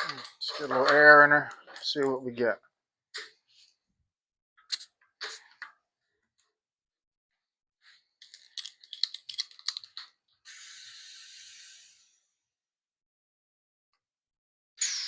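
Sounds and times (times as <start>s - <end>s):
air chuck clicks and rattles: 8.2s - 10.1s
air hissing into tire: 10.4s - 12.3s.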